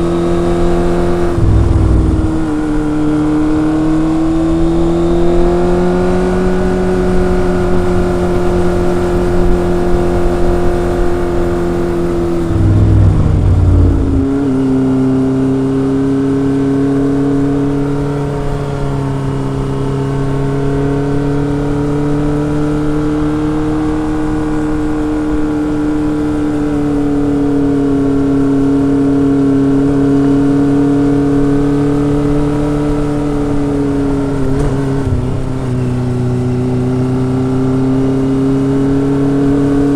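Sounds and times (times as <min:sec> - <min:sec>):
motorcycle engine running: 0:01.2 - 0:03.1, 0:11.4 - 0:14.8.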